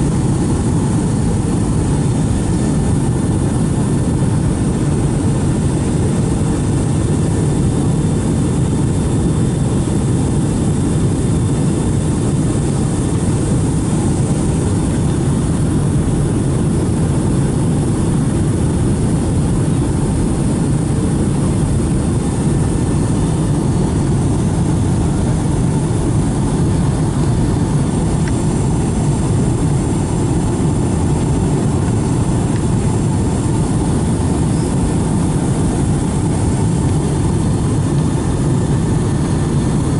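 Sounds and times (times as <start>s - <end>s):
airliner cabin engine rumble: 0.0s - 39.9s.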